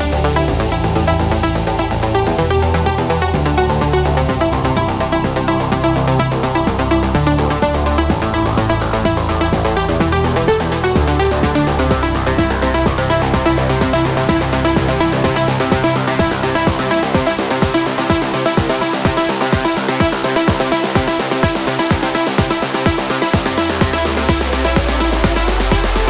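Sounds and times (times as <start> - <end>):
deep bass: 0.0 - 20.8, 23.3 - 26.0
kick drum: 0.0 - 26.0
synth chords: 0.0 - 26.0.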